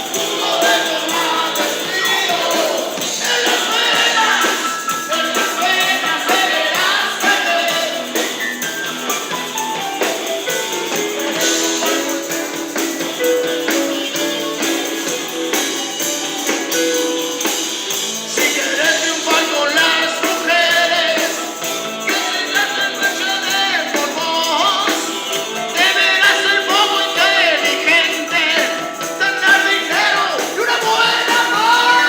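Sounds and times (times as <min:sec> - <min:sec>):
person singing: 0:00.0 - 0:08.7, 0:10.4 - 0:32.0
live blues band playing: 0:00.0 - 0:32.0.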